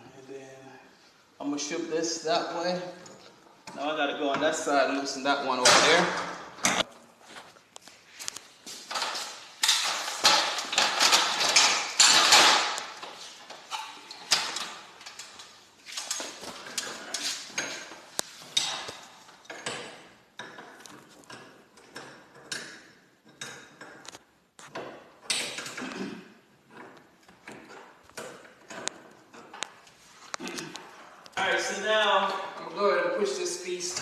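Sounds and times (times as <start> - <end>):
metal clanking of tools: 8.9 - 29.7.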